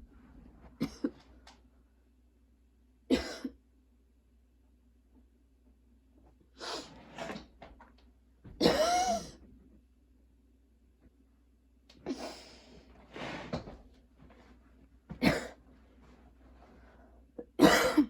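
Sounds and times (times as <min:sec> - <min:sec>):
woman coughing: 0:00.8 - 0:01.2, 0:03.1 - 0:03.6, 0:08.6 - 0:09.4, 0:15.2 - 0:15.6, 0:17.5 - 0:18.0.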